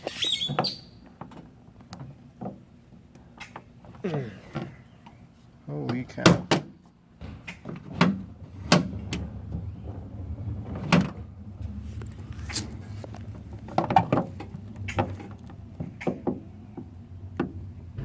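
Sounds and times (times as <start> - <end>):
low hum: 16.6 - 18.0.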